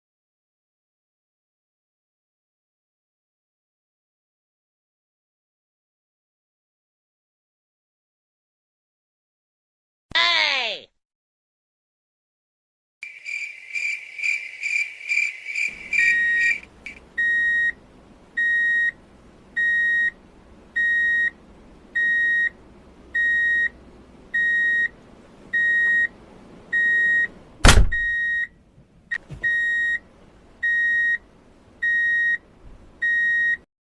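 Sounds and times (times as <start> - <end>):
high electronic beep: 16.0 - 16.6
loud thump: 27.6 - 28.1.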